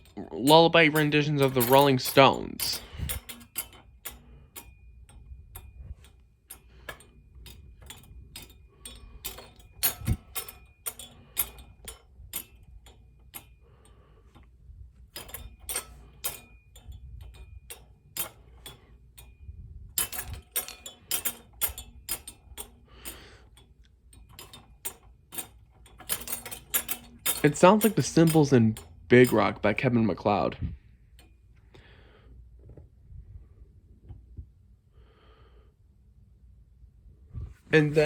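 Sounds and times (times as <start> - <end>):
toy rocking and clicking: 0.0 - 30.0.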